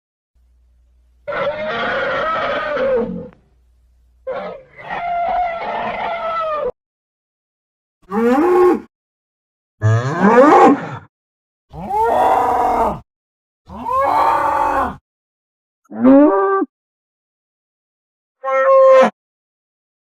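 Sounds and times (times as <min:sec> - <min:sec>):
bull bellowing: 0:01.3 - 0:03.4, 0:11.7 - 0:12.9, 0:13.7 - 0:15.0.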